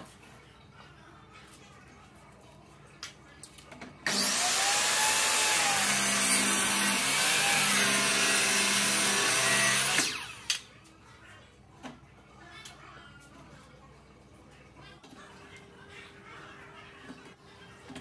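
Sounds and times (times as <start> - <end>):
electric power tool running: 4.1 - 10.5.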